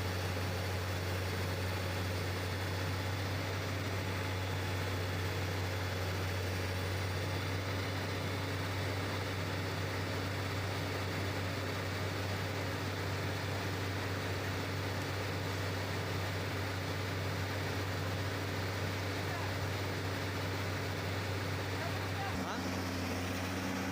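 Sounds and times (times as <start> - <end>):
excavator engine droning: 0.0 - 23.9.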